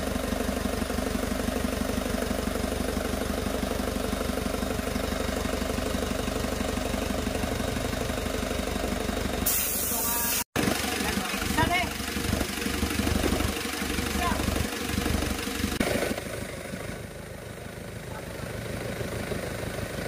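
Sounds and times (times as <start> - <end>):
diesel engine idling: 0.0 - 20.0
burst of hiss: 9.5 - 10.4.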